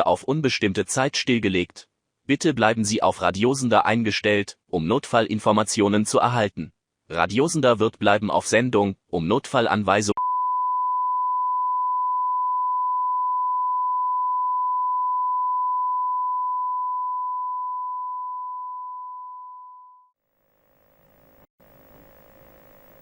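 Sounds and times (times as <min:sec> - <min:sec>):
steady sine tone: 0:10.2 - 0:23.0
faint hum and hiss: 0:20.6 - 0:23.0.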